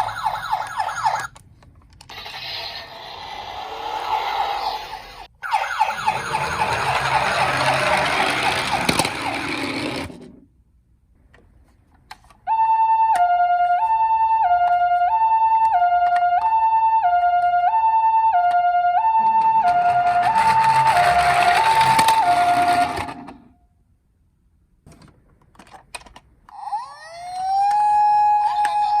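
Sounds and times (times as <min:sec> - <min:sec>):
toy ambulance two-tone siren: 0:00.0 - 0:01.3, 0:02.1 - 0:10.0, 0:12.5 - 0:23.5, 0:26.5 - 0:29.0.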